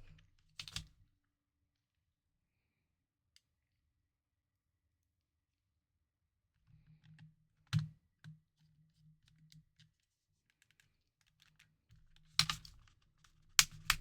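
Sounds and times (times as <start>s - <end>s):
small plastic clicks and taps: 10.5s - 14.0s.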